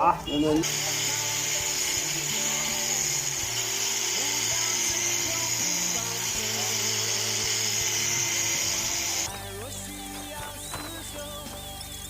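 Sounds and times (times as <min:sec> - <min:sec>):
background music: 0:00.0 - 0:12.0
high-pitched rotary tool whine: 0:00.6 - 0:09.4.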